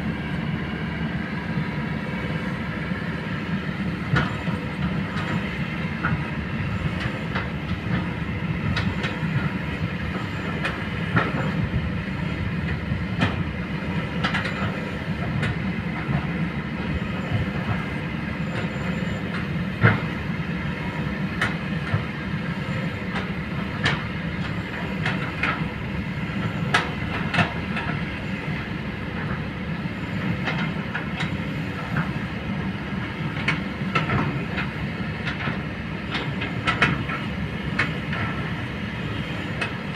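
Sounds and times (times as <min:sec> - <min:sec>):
excavator diesel engine running: 0:00.0 - 0:39.9
metallic clanks and knocks: 0:33.4 - 0:38.5.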